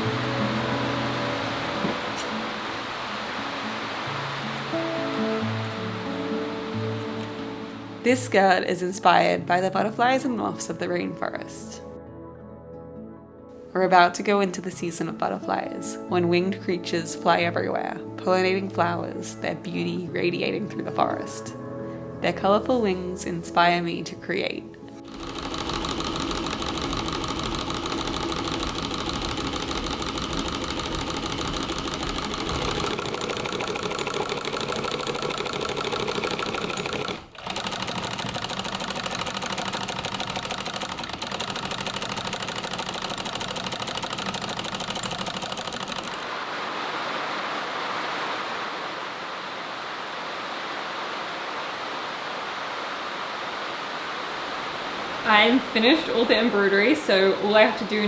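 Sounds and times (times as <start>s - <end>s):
steady hiss: 0.0s - 8.2s, 46.0s - 57.9s
sewing machine stitching: 25.0s - 46.3s.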